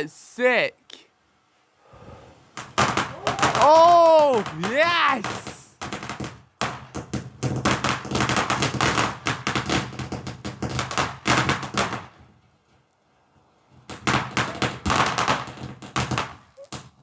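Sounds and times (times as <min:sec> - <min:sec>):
firework crackling bangs: 0:02.5 - 0:12.5, 0:13.7 - 0:17.0.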